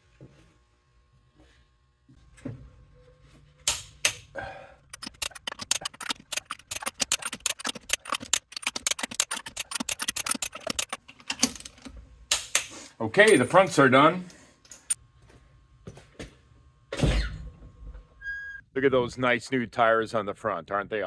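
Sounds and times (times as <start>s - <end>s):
ratchet wrench clicking: 4.9s - 11.0s.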